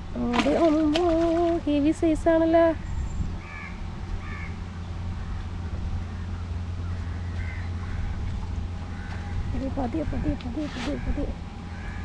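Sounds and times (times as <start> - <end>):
steady low rumble: 0.0 - 12.0
short bird calls: 2.8 - 4.6.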